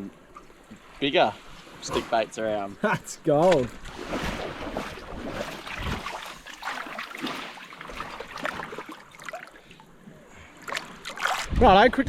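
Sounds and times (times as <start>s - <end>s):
water trickling and lapping: 0.0s - 11.8s
small splashes: 2.9s - 11.6s.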